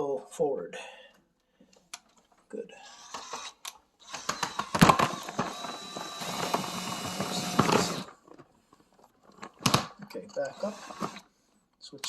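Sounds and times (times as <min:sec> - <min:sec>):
cordless drill driving a screw: 0:02.8 - 0:08.1, 0:10.4 - 0:11.3.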